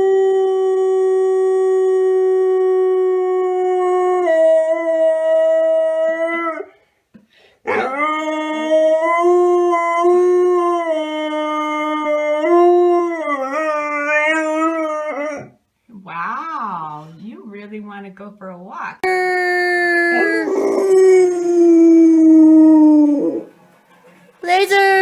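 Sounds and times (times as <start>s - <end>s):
dog howling: 0.0s - 6.8s, 7.7s - 15.6s, 19.0s - 23.5s.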